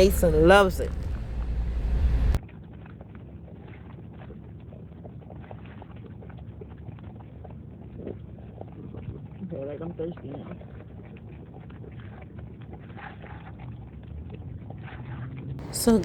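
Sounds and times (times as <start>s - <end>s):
road rumble inside car: 0.0s - 2.4s, 13.6s - 16.0s
soft hiss: 0.0s - 2.4s.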